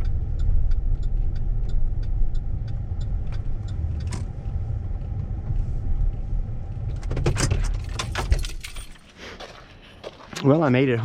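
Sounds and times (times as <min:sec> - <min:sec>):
car engine and road rumble: 0:00.0 - 0:11.0.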